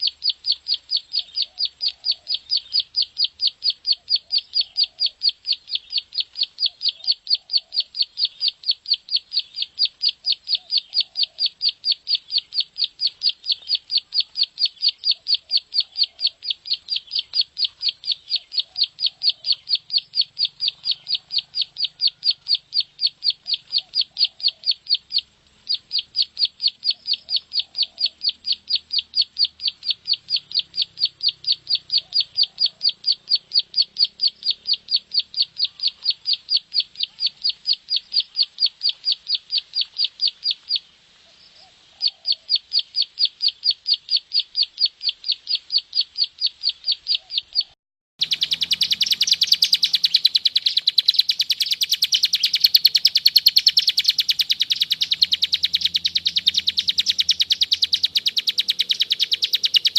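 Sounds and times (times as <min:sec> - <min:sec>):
bird rapid clicking call: 0:00.0 - 0:40.8, 0:42.7 - 0:59.9
harsher bird clicking notes: 0:48.2 - 0:59.9.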